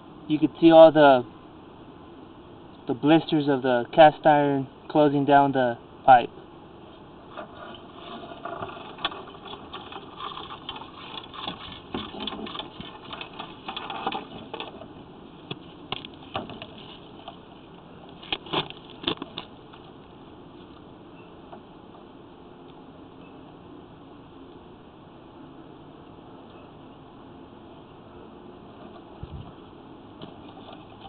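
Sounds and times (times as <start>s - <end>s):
inspection cable rattling in drain pipe: 7.6s - 15.0s.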